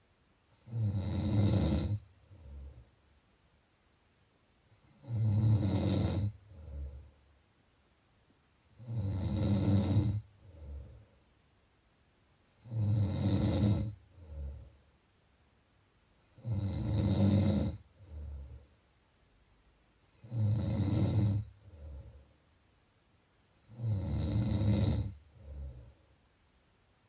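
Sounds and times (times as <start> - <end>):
quiet breath: 0.0 - 3.1, 4.6 - 7.4, 8.6 - 11.5, 12.4 - 15.0, 16.1 - 19.0, 20.0 - 22.6, 23.4 - 26.3
person snoring: 0.6 - 2.9, 4.8 - 7.1, 8.7 - 11.0, 12.6 - 14.7, 16.3 - 18.6, 20.2 - 22.3, 23.6 - 26.0.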